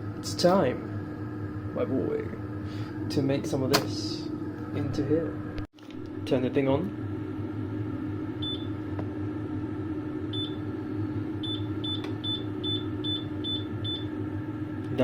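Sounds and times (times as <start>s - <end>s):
steady low hum: 0.0s - 15.0s
hob touch control beeps: 11.4s - 14.1s.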